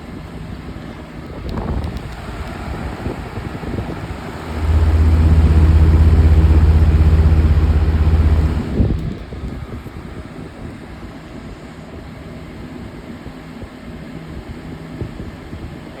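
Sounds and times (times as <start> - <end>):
box fan airflow rushing: 1.0 - 9.4
fan vibrating against table: 1.6 - 9.1.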